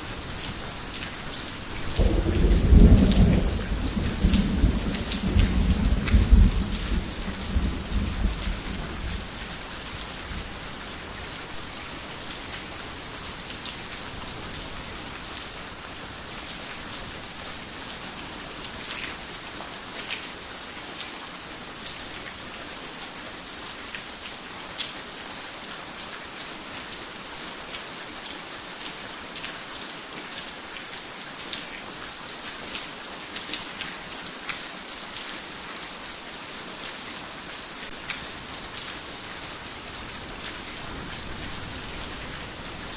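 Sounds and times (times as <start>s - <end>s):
heavy rain falling: 0.0s - 42.9s
low thunder rumble: 1.9s - 9.3s.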